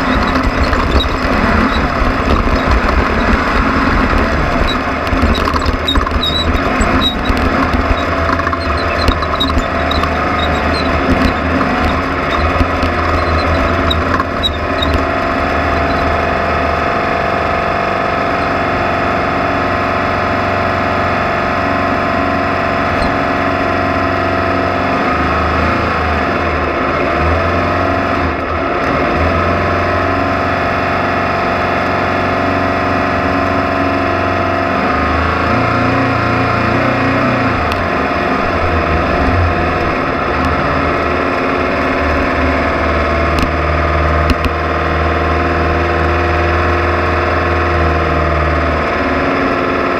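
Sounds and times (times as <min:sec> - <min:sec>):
heavy low rumble: 0:00.0 - 0:19.8, 0:36.1 - 0:47.4
race engine revving under load: 0:00.0 - 0:49.9.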